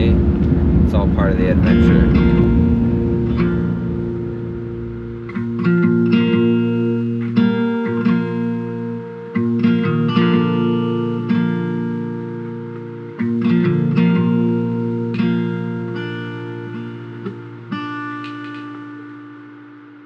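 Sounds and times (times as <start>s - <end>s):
guitar chords ringing: 0.0s - 20.0s.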